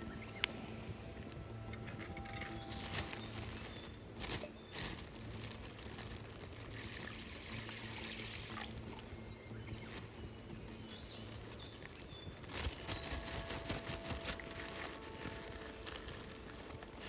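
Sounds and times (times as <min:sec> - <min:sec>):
water pouring and trickling: 0:02.0 - 0:09.2.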